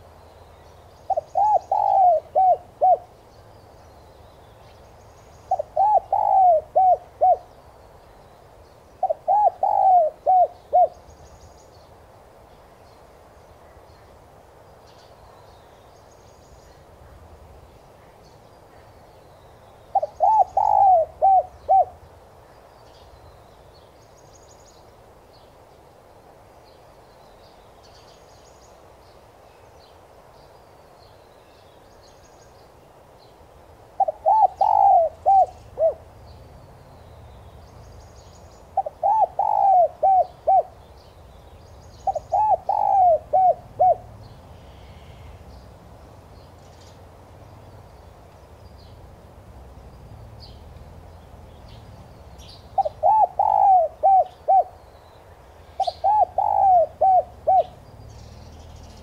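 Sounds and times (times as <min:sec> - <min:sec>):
dove cooing: 0:01.1 - 0:03.2, 0:05.5 - 0:07.5, 0:09.0 - 0:11.0, 0:19.9 - 0:22.0, 0:34.0 - 0:36.1, 0:38.8 - 0:40.8, 0:42.0 - 0:44.1, 0:52.8 - 0:54.8, 0:55.8 - 0:57.8.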